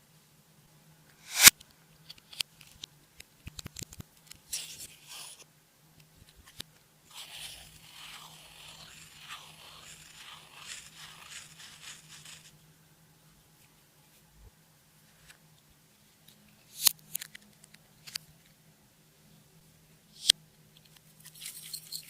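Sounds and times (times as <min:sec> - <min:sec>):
sharp click: 0:01.2 - 0:01.6.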